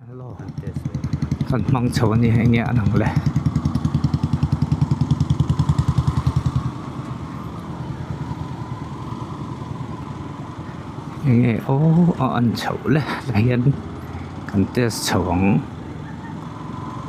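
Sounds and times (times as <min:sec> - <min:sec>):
motorcycle engine running: 0:00.3 - 0:12.6.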